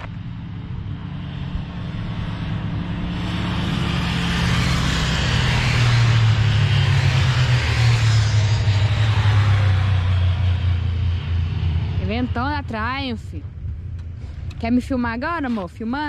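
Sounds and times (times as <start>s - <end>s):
motorcycle engines running: 0.0s - 16.0s
road noise: 0.0s - 16.0s
low steady hum: 10.0s - 16.0s.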